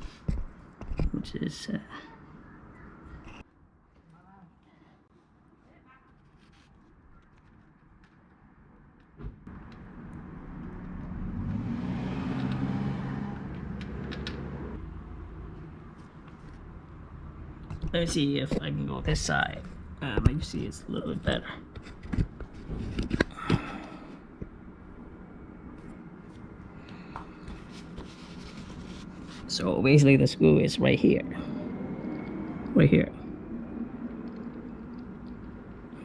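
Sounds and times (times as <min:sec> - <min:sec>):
passing road vehicle: 0:09.5 - 0:17.7, 0:30.6 - 0:36.0.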